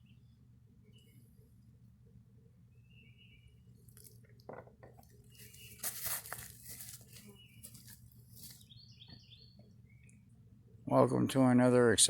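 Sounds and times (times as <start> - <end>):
rustling and crinkling: 3.8 - 8.8.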